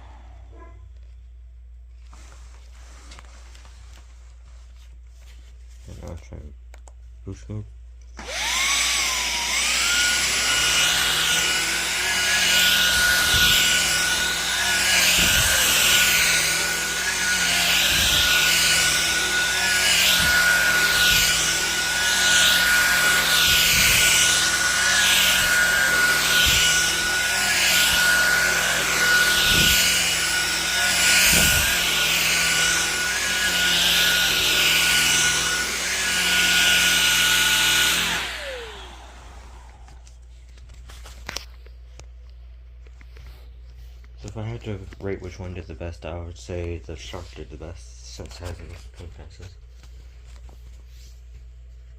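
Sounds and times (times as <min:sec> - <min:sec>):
stick vacuum running over carpet: 0:08.2 - 0:40.2.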